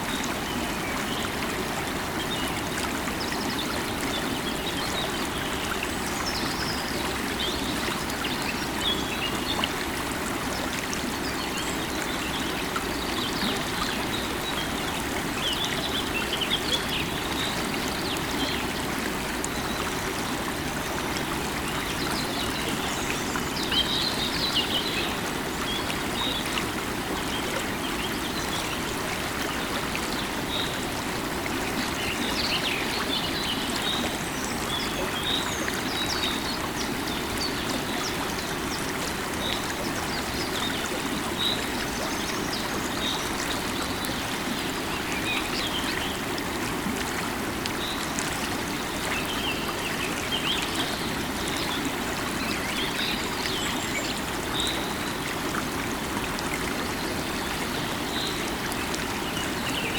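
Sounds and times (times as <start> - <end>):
river water running: 0.0 - 59.9.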